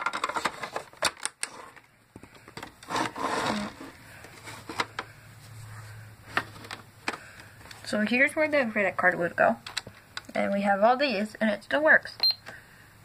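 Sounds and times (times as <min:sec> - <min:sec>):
low steady hum: 0:00.1 - 0:13.0.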